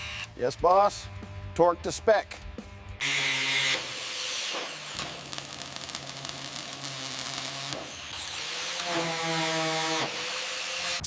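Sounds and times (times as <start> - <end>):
power tool humming: 0.0 - 0.4, 3.0 - 11.0.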